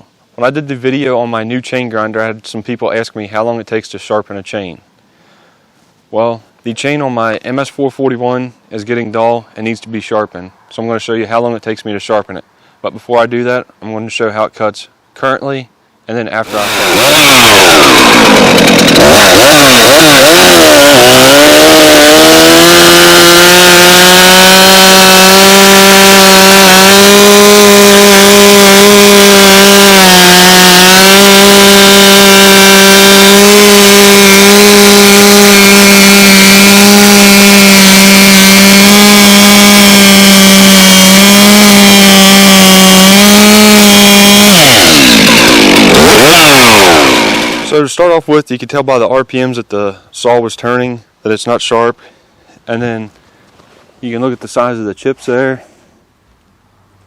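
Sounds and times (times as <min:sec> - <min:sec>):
chainsaw cutting wood: 0:16.4 - 0:47.8.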